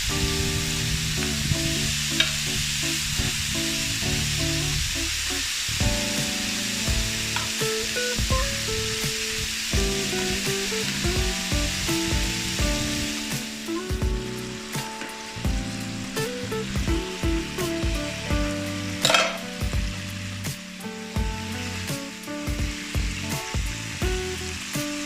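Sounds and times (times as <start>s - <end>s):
background music: 0.0s - 25.0s
pork belly sizzling: 0.0s - 25.0s.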